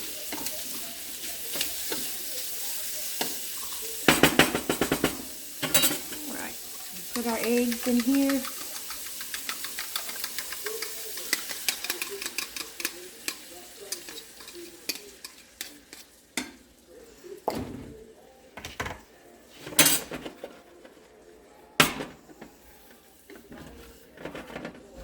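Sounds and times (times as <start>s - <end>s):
eggs sizzling in a skillet: 0.0s - 17.5s
spatula scraping and knocking pan: 7.1s - 16.6s, 21.8s - 25.0s.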